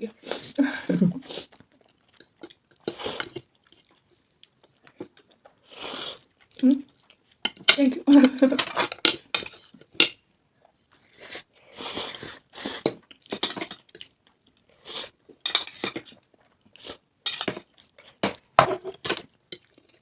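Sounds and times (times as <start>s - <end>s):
chewing noises: 1.4s - 7.5s
cutlery clinking and scraping dishes: 7.4s - 10.2s, 12.8s - 14.1s, 15.4s - 16.2s, 17.2s - 20.0s.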